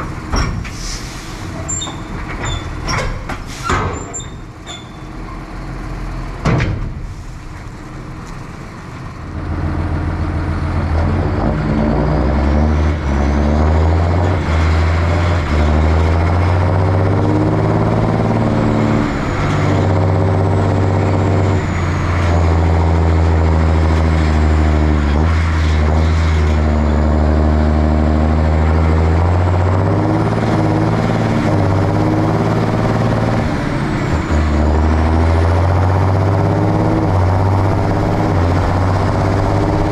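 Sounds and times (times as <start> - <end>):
tractor engine revving: 9.3 - 39.9.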